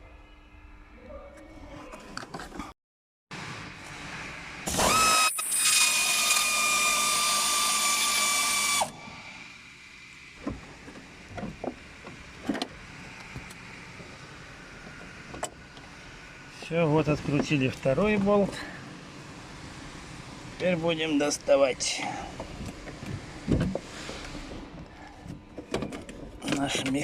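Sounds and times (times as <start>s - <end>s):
power tool whining: 4.6s - 9.0s.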